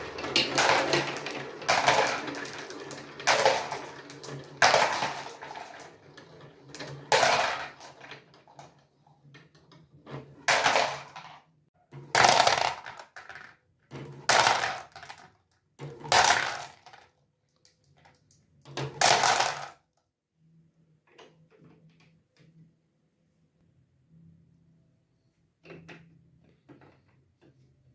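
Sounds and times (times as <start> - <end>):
marbles rattling down plastic run: 0.0 - 8.9, 10.4 - 11.4, 12.1 - 13.6, 14.2 - 15.3, 15.9 - 17.2, 18.8 - 19.8.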